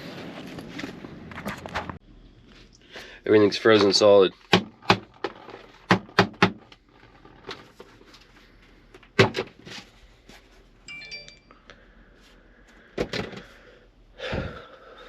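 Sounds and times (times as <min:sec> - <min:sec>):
high metallic ring: 0:10.9 - 0:11.6.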